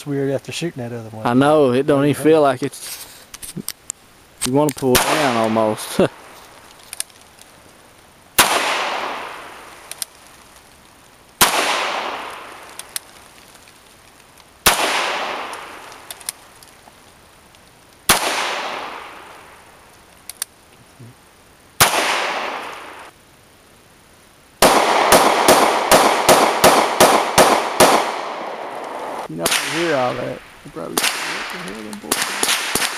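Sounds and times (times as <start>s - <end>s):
gunshots with echo: 4.9s - 5.9s, 8.4s - 9.5s, 11.4s - 12.5s, 14.6s - 15.8s, 18.1s - 19.2s, 21.8s - 23.1s, 24.6s - 32.9s
rapid gunfire: 24.6s - 28.7s, 31.0s - 32.9s.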